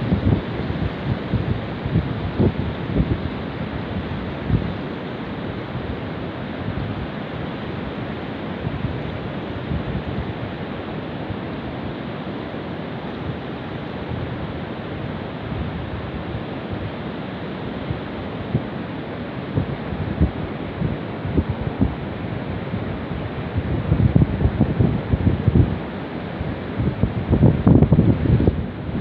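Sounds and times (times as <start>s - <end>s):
wind buffeting microphone: 0.0s - 7.2s, 7.9s - 10.6s, 19.5s - 29.0s.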